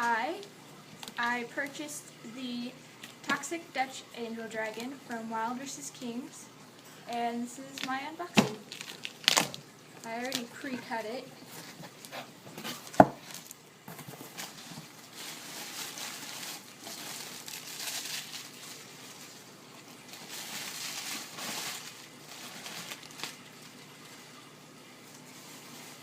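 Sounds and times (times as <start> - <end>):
cardboard packaging rustling: 7.8 - 24.2, 25.0 - 26.0.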